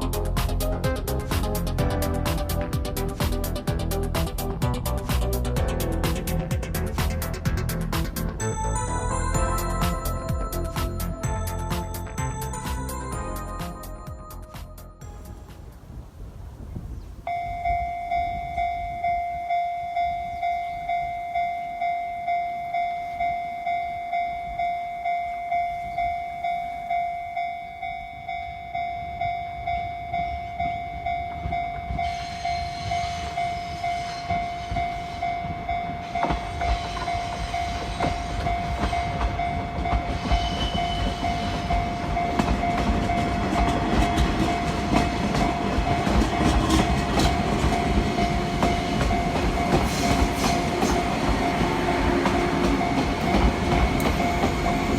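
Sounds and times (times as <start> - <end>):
level crossing bell dinging: 8.4 - 15.3, 17.3 - 54.9
train wheels clattering: 30.4 - 54.9.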